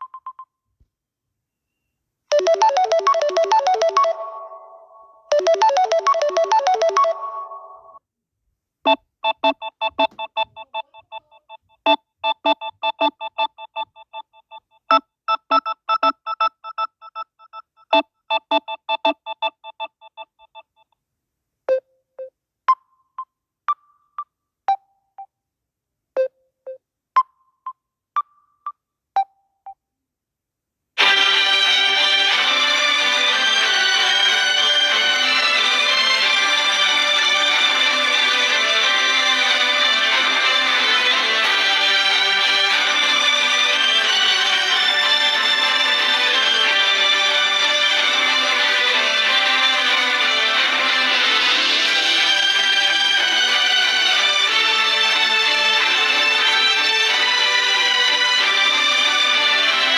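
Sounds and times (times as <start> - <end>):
phone ringtone melodies: 2.3 - 8.0, 8.9 - 20.9.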